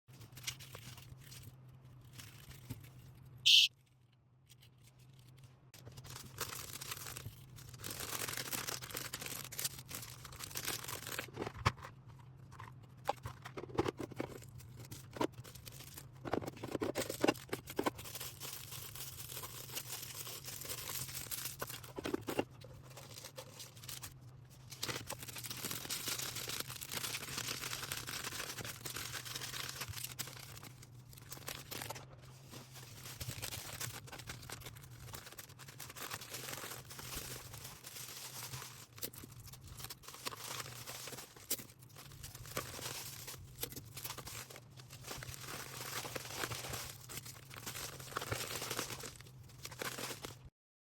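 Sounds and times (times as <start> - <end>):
high-pitched tone: 3.5 - 3.7
plastic packaging crinkling: 3.9 - 50.5
packaging tearing: 6.0 - 11.6, 17.0 - 22.0, 22.9 - 32.1, 32.8 - 50.5.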